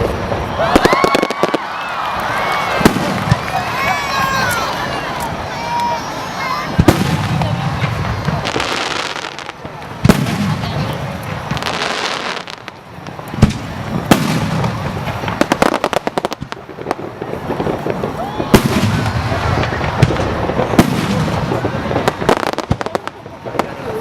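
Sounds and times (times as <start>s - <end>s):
fireworks shells booming: 2.6s - 6.0s, 6.6s - 24.0s
crackling pops: 6.7s - 24.0s.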